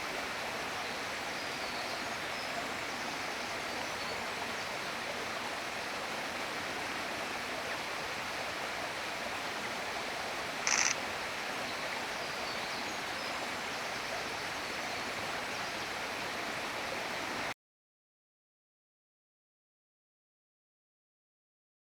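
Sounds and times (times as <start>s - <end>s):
stream rushing: 0.0s - 17.5s.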